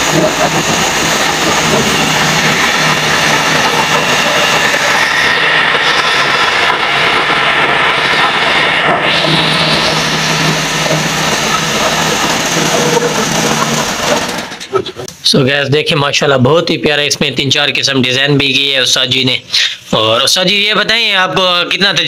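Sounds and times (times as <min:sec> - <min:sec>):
woodworking machine whirring: 0:00.0 - 0:15.1.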